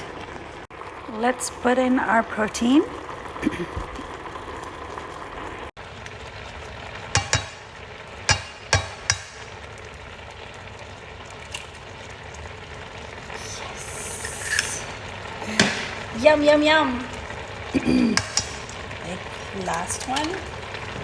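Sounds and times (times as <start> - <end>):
vegetables sizzling in a pan: 0.0 - 21.0
eggs cracking: 7.1 - 9.6, 13.4 - 16.2, 17.0 - 20.6.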